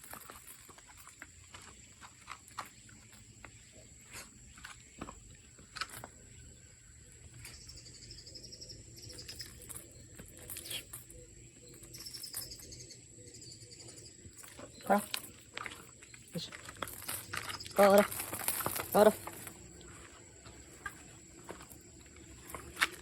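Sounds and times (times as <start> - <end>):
pulsed insect chirping: 0.0 - 23.0
high insect-like tone: 5.8 - 23.0.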